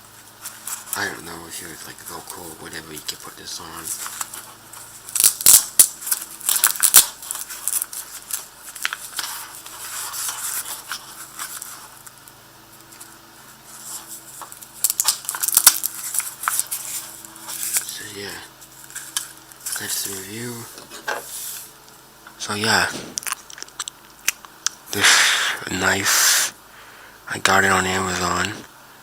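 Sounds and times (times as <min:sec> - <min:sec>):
handling noise: 0:03.0 - 0:24.6
velcro strap ripping open: 0:05.1 - 0:11.7, 0:14.8 - 0:18.0.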